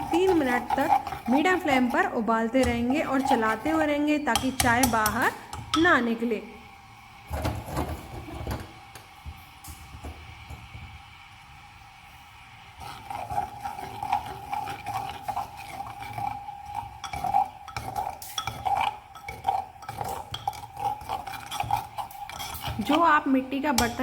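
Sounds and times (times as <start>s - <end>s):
spoon clinking against clay pot: 0.0s - 5.9s, 13.0s - 23.1s, 23.7s - 24.0s.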